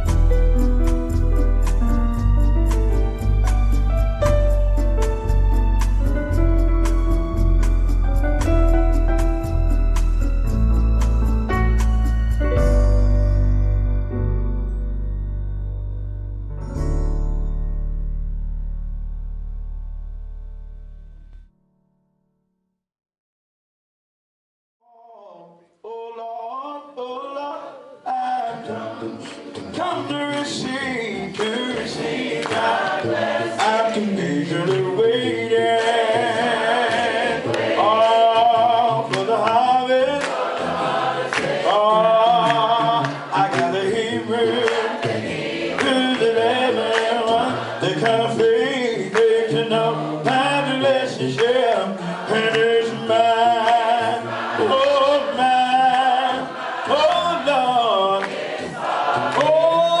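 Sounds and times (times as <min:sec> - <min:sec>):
gospel choir singing: 0:25.9 - 1:00.0.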